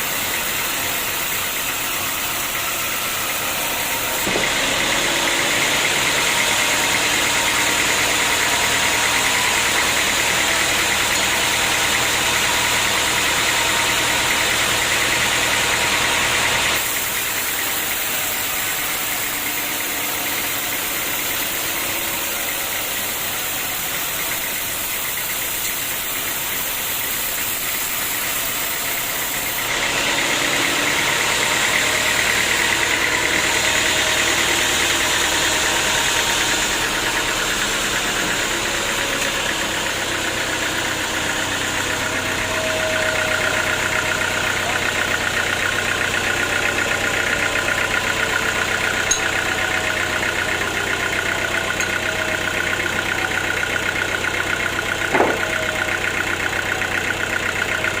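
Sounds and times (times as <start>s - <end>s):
sawmill machinery running: 0.0s - 58.0s.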